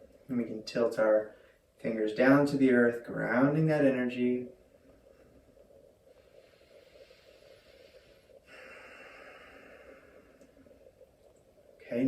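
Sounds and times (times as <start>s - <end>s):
slow breathing: 4.6s - 11.8s.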